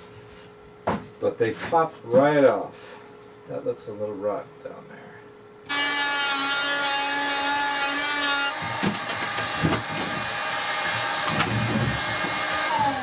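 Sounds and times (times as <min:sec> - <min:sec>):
power tool cutting wood: 0:05.7 - 0:13.0.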